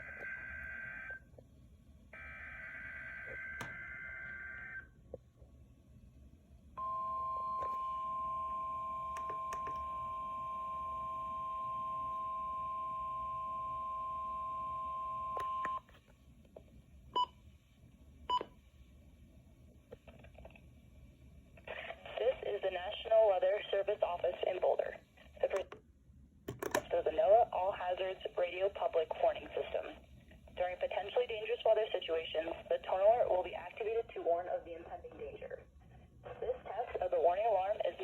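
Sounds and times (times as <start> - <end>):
steady warning alarm tone: 2.2 - 4.9, 6.8 - 15.8.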